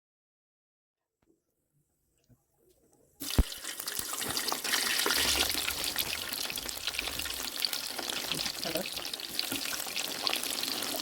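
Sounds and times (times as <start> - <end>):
snacks sizzling in hot oil: 3.2 - 11.0.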